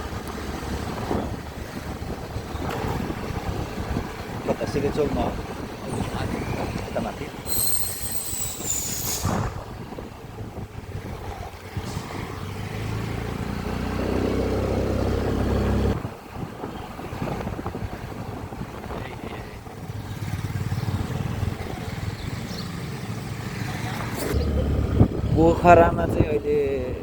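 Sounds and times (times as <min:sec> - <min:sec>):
wind and road noise: 0:00.0 - 0:27.0
motorcycle engine running: 0:19.7 - 0:25.6.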